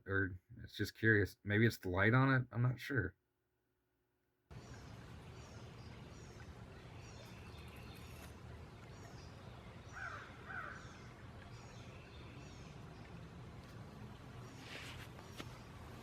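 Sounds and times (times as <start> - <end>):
small birds chirping: 4.5 - 16.0
crow cawing: 9.9 - 10.9.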